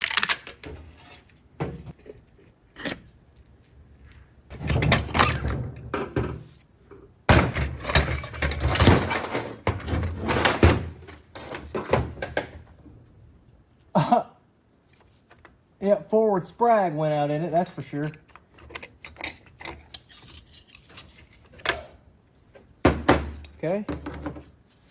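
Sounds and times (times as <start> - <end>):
metal parts clunking and rattling: 7.3 - 13.0, 17.4 - 21.9.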